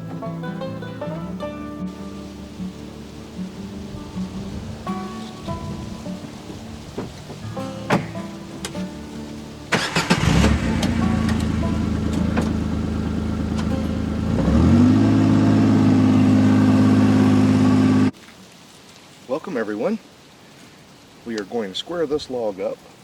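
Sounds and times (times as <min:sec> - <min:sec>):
engine starting and idling: 0:09.7 - 0:18.1.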